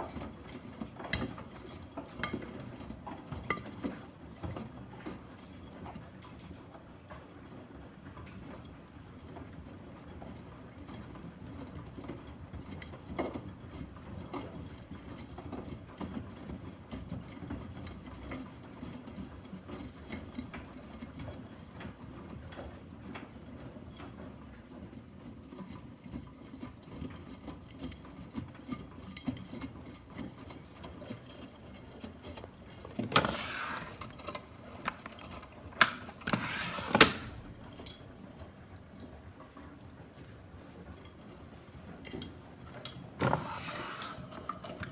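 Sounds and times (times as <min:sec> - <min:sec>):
washing machine rumbling: 0:00.0 - 0:44.9.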